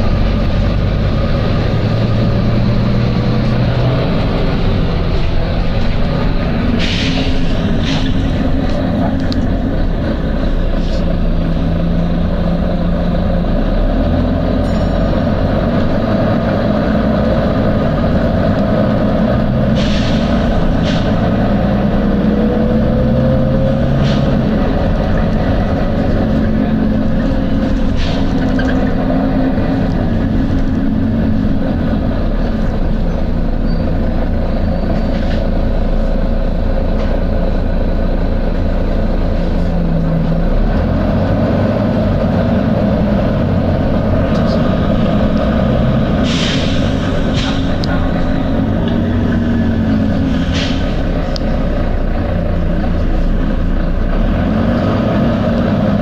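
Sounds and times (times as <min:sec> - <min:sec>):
bus diesel engine droning: 0:00.0 - 0:56.0.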